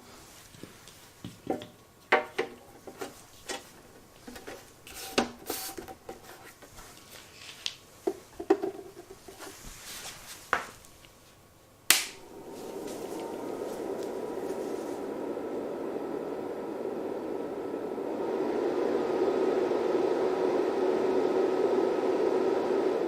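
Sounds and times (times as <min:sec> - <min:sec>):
sharp click: 0:11.9 - 0:12.2.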